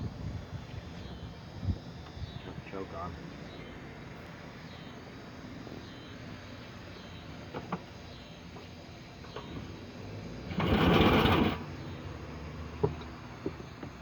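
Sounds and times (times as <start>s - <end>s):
small engine pull-start cranking: 10.4s - 11.9s.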